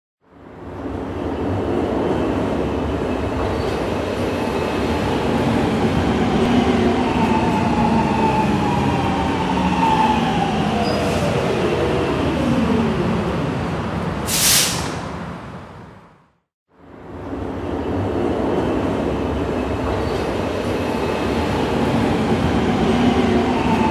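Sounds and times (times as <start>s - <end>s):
subway train rumble: 0.2s - 23.9s
sharp hiss: 14.3s - 15.0s.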